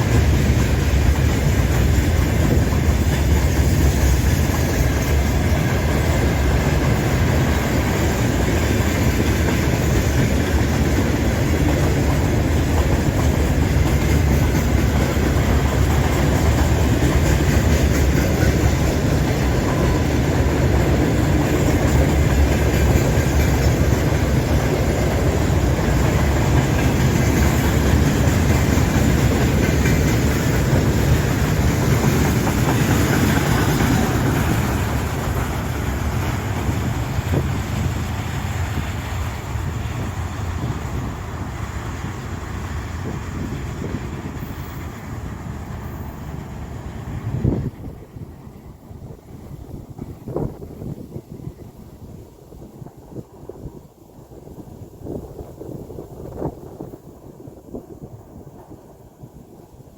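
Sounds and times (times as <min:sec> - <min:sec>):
wagon wheels clickety-clack: 0:00.0 - 0:46.4
train wheels rumbling on rail: 0:00.0 - 0:59.9.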